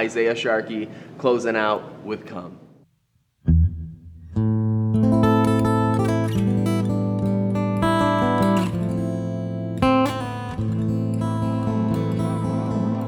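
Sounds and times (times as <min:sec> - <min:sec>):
held low bass note: 0:03.5 - 0:04.8
guitar playing ringing chords: 0:03.5 - 0:13.0.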